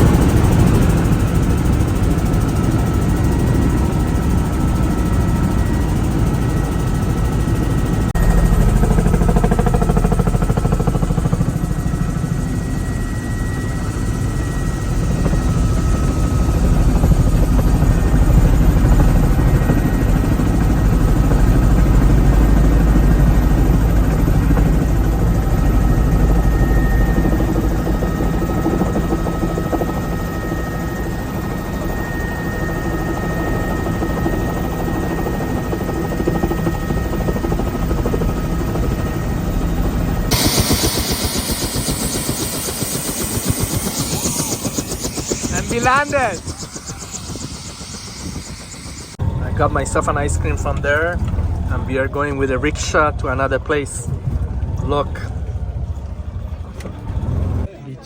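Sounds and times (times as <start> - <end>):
helicopter rotor and engine noise: 0.0 - 58.0
thin high tones: 40.4 - 49.2.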